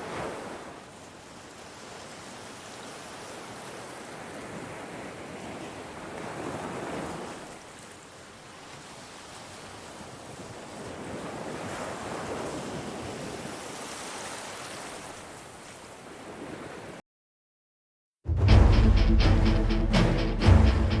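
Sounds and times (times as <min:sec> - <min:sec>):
ocean waves: 0:00.0 - 0:17.0, 0:18.3 - 0:21.0
loud music with drums: 0:18.3 - 0:21.0.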